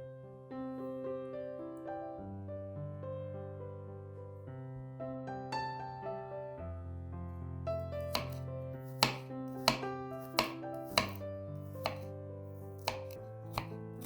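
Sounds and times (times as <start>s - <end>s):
soft piano music: 0.0s - 14.0s
knife chopping on cutting board: 8.0s - 12.1s, 12.7s - 14.0s.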